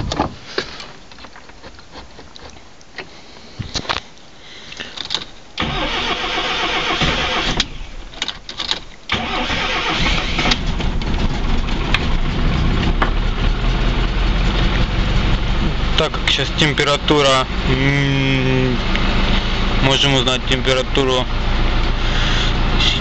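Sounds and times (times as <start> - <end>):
engine starter cranking: 5.0 - 16.5
car engine idling: 5.6 - 23.0.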